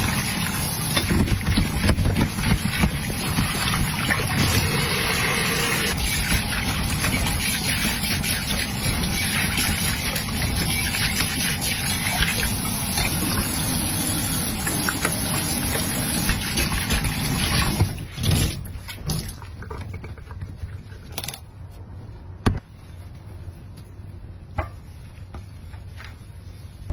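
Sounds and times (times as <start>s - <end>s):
tap water running: 0.0s - 20.2s.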